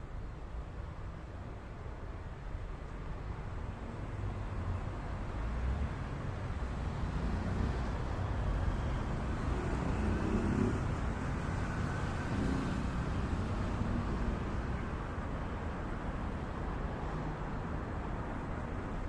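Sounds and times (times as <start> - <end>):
road traffic rumble: 0.0 - 19.0.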